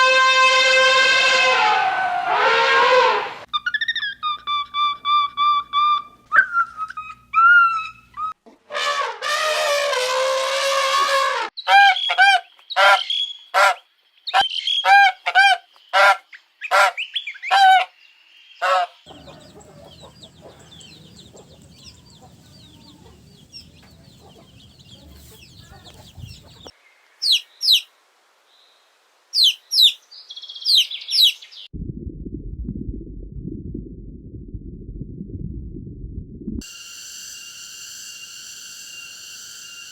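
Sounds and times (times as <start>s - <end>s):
domestic fowl calling: 7.0s - 17.9s, 18.6s - 27.9s
bird chirps: 18.1s - 27.9s, 29.4s - 31.7s
low rumble: 19.1s - 26.7s, 31.7s - 36.6s.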